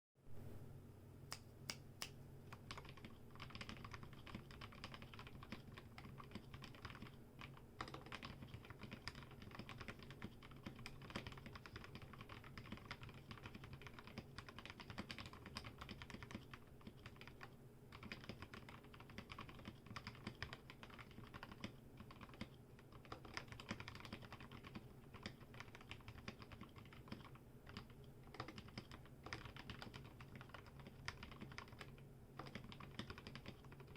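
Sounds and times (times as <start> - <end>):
mechanical keyboard typing: 2.5 - 33.9.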